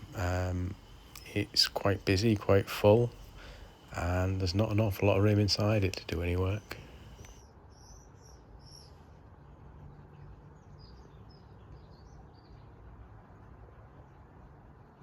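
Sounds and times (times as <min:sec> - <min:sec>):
small birds chirping: 0:00.0 - 0:09.0.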